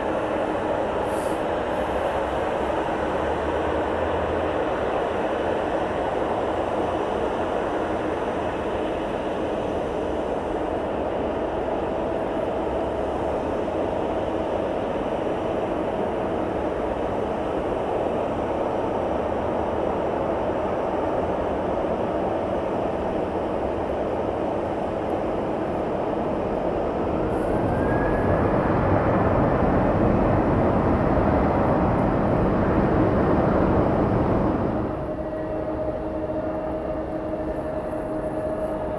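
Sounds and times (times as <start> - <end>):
jet engines running: 23.1 - 38.9
rising engine whine: 26.9 - 37.8.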